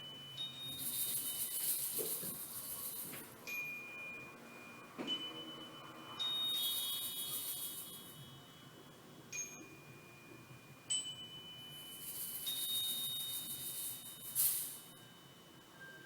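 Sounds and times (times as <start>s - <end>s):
soft high hiss: 0.0s - 16.0s
metal chime ringing: 3.4s - 8.7s, 9.3s - 15.0s.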